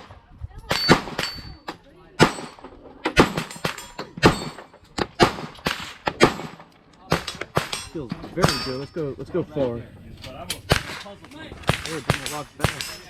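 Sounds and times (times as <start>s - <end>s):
pistol shots with echo: 0.7s - 1.5s, 2.2s - 8.8s, 10.6s - 13.0s.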